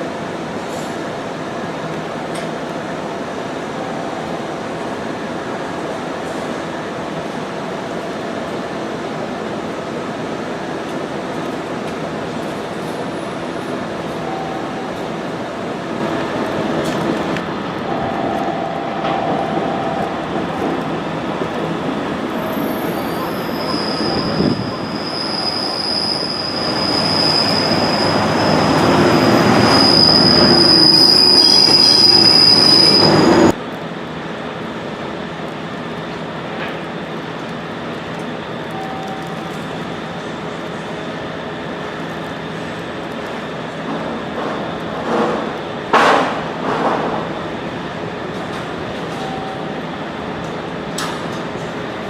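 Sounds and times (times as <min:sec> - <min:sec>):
train running on rails: 0:00.0 - 0:52.0
high wheel squeal: 0:22.4 - 0:33.5.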